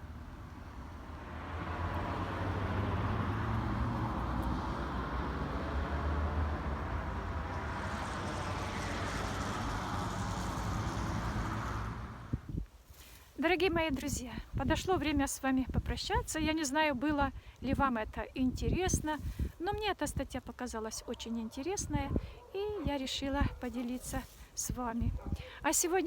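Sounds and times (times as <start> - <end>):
motor vehicle passing: 0.0 - 12.5.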